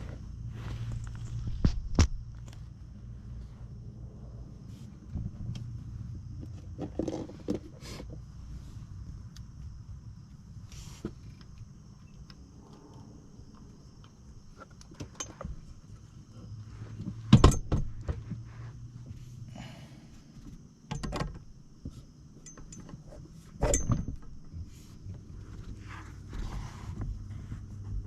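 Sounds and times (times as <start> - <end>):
metallic clicks and clinks: 22.4 - 24.0.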